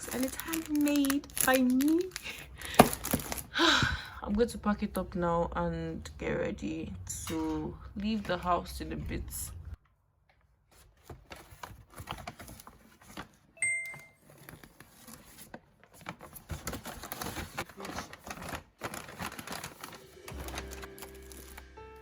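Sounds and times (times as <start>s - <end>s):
plastic bags crinkling: 0.0s - 3.6s, 14.2s - 21.8s
short bell-like chime: 13.6s - 14.2s
background music: 19.4s - 22.0s.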